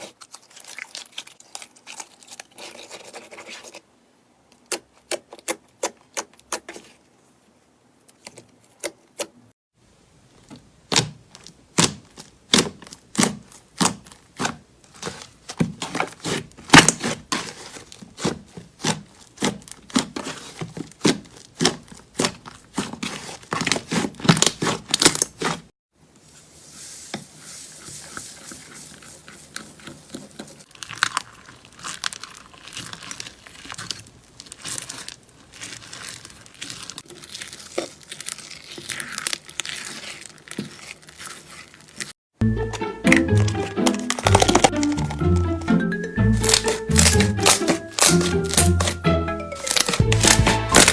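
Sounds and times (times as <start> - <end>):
soft crackling and crinkling: 0.0 - 3.9, 4.5 - 42.2, 49.6 - 50.9
slime squishing with sticky pops: 10.4 - 25.7, 29.5 - 42.1, 46.4 - 49.0, 49.6 - 50.9.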